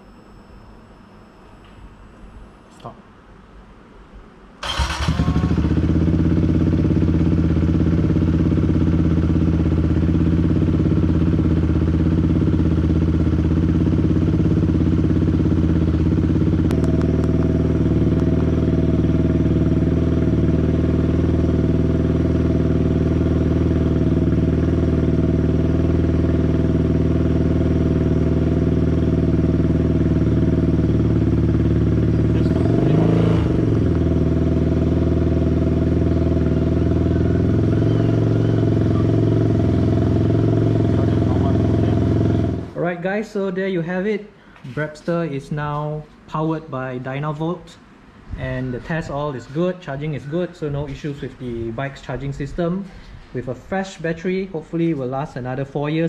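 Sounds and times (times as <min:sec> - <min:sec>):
motorcycle engine starting and idling: 0:04.6 - 0:42.8.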